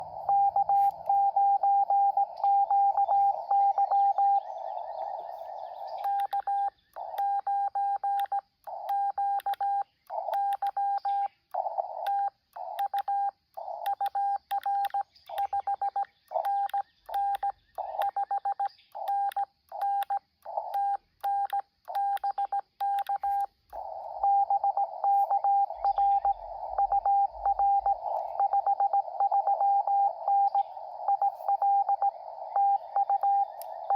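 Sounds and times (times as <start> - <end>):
radio band hiss: 0.0 - 6.2, 23.3 - 33.9
morse code tone: 0.0 - 9.8, 20.8 - 33.9.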